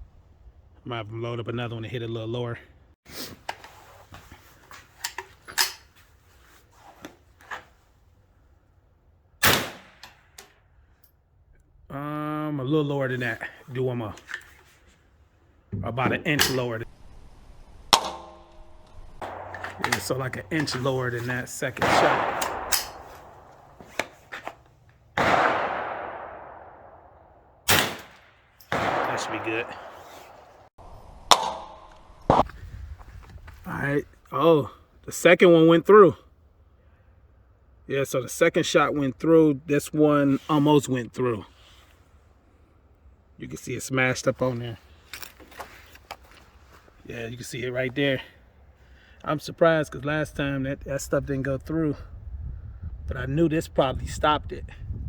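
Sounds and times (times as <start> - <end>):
rifle handling clicks: 5.0 - 5.9, 19.2 - 20.9, 22.0 - 24.8
rifle shot: 9.4 - 10.3, 16.1 - 17.0, 17.9 - 24.1, 25.2 - 32.4.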